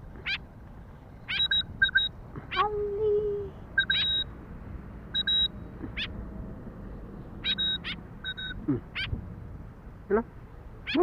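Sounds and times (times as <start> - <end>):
bird calling high chirps: 0.2 - 0.4, 1.1 - 2.7, 3.7 - 4.4, 5.1 - 6.2, 7.4 - 9.2.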